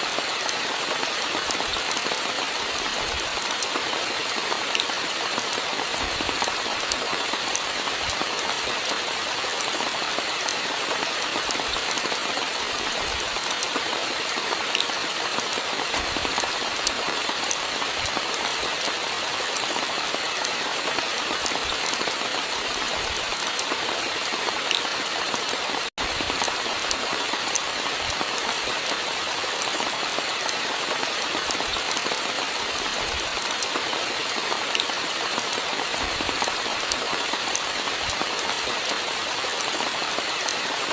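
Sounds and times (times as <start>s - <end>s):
steady rainfall: 0.0s - 40.9s.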